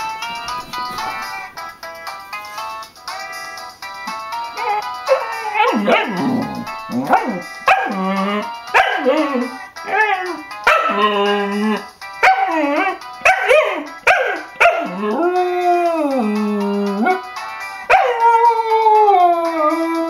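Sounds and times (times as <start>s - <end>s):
dog howling: 4.5s - 20.0s.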